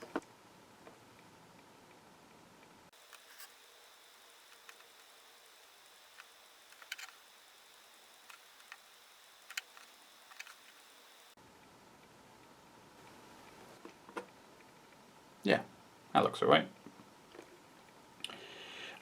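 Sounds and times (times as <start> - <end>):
faint room hiss: 0.0 - 19.0
thin high whine: 2.9 - 11.4.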